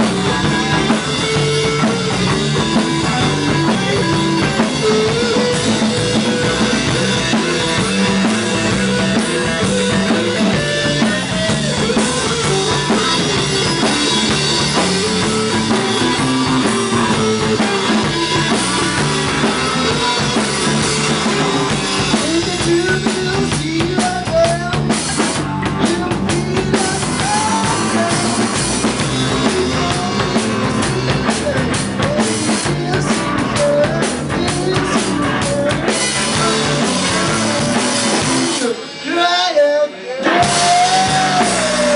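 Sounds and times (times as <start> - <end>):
music with drum kit: 0.0 - 41.9.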